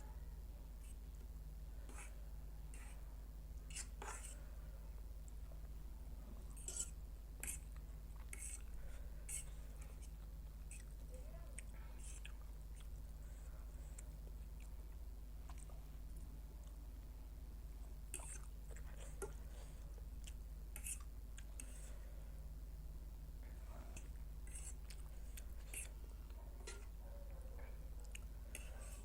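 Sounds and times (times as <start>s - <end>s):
low electrical hum: 0.0s - 29.0s
person chewing food: 6.4s - 16.8s, 18.1s - 22.0s, 23.4s - 27.0s, 28.0s - 29.0s.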